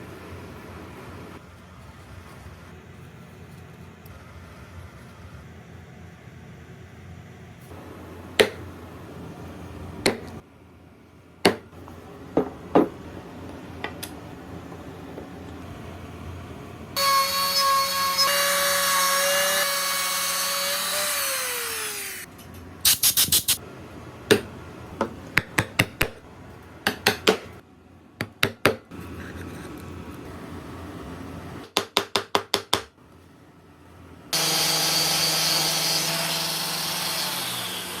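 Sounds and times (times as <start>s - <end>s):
sharp knocks on wood: 11.5s - 11.7s
power tool whining: 17.0s - 22.3s, 34.4s - 38.0s.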